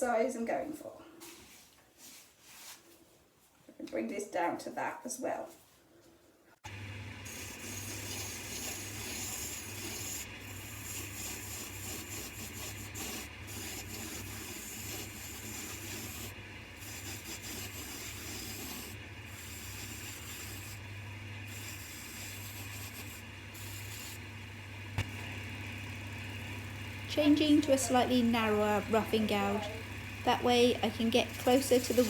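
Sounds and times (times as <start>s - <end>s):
wood lathe motor hum: 6.7s - 32.0s
gouge scraping spinning wood: 7.2s - 32.0s.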